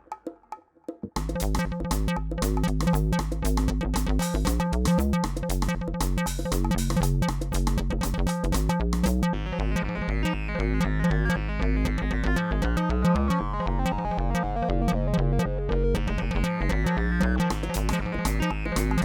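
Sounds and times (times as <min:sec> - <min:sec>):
synthesizer and keyboard music: 0:13.3 - 0:16.9.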